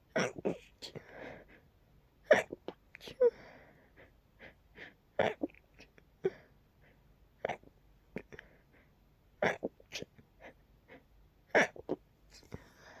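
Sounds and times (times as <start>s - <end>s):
stifled sneezes: 0.1s - 1.0s, 2.3s - 3.2s.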